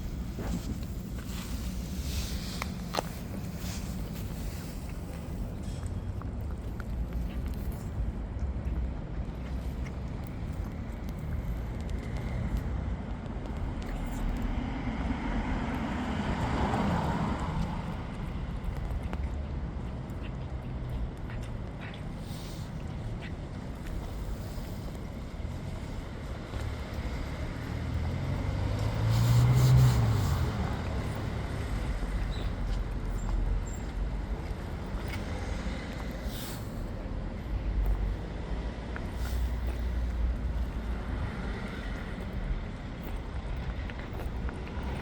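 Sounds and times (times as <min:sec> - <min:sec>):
street traffic rumble: 0:00.0 - 0:45.0
vehicle passing close: 0:23.9 - 0:37.2.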